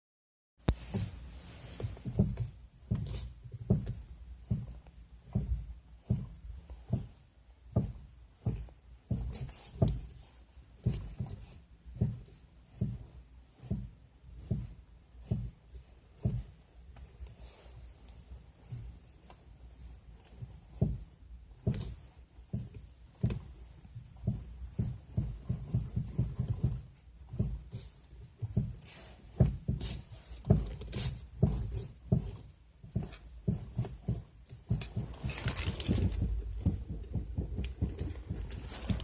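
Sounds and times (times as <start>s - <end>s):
dull knocks of car steering: 28.5s - 39.0s.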